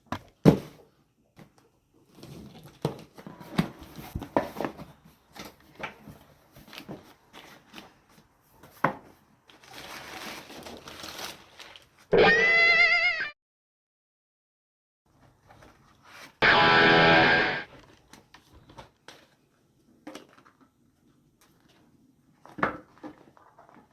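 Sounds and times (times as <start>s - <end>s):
packaging rustling: 9.5s - 12.0s
packaging crinkling and tearing: 9.5s - 12.1s.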